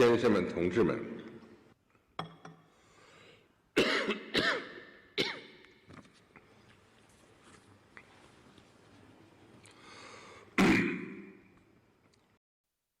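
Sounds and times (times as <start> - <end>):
man clearing his throat: 3.8 - 5.6, 10.6 - 11.2
man coughing: 3.8 - 5.6, 10.6 - 11.2.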